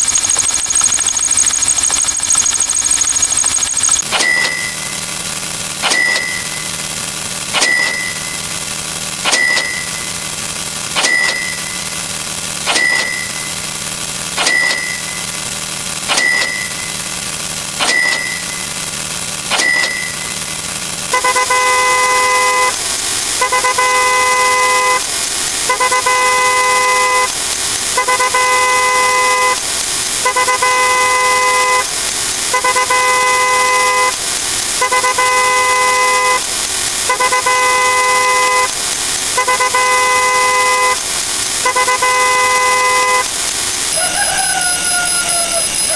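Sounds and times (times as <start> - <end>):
sharp click and high beep: 0.0 - 5.1, 5.8 - 6.7, 7.6 - 8.4, 9.2 - 10.0, 11.0 - 11.8, 12.7 - 13.5, 14.4 - 15.2, 16.1 - 17.0, 17.8 - 18.7, 19.5 - 20.4.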